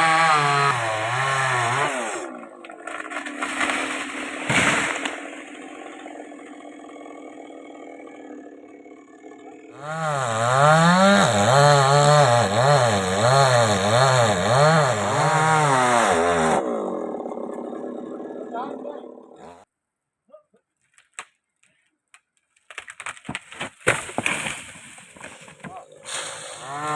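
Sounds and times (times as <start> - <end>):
chainsaw engine revving and idling: 0.0 - 19.7, 25.6 - 26.9.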